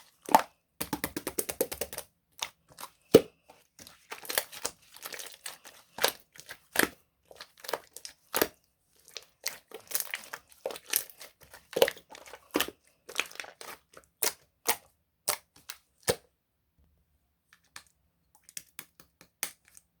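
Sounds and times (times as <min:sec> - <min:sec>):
slime clicking and popping: 0:00.8 - 0:02.1.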